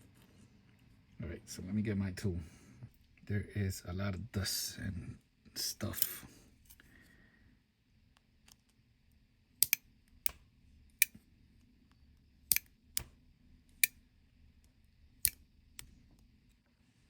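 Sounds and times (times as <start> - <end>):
sharp metal clicks: 9.6 - 10.4, 12.5 - 13.1.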